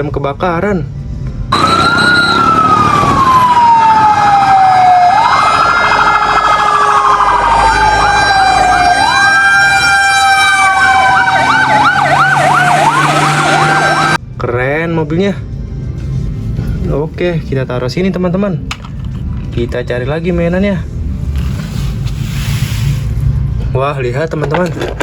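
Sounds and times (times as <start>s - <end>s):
fire engine siren wailing: 1.5s - 14.2s
siren yelp: 1.5s - 14.2s.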